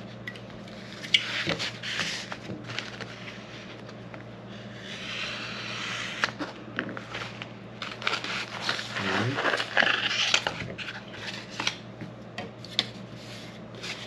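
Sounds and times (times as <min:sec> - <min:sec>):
steady low hum: 0:00.0 - 0:14.0
vinyl wrap clicks and scrapes: 0:05.2 - 0:11.8.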